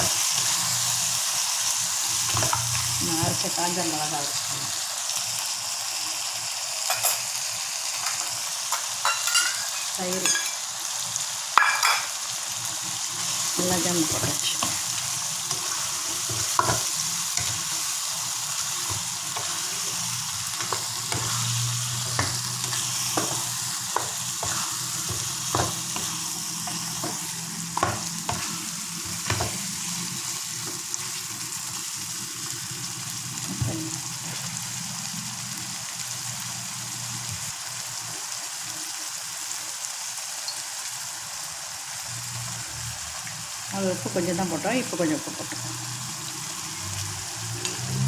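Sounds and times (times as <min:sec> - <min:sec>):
chicken sizzling in a pan: 0:00.0 - 0:48.0
spoon scraping a pan: 0:08.0 - 0:10.6, 0:14.0 - 0:30.0.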